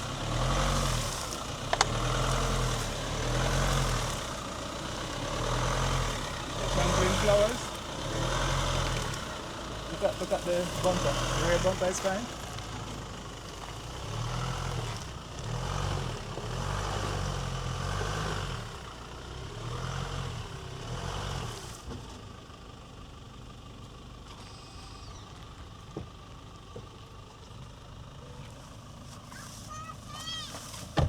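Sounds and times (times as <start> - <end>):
pickup truck engine revving: 0.0 - 22.0.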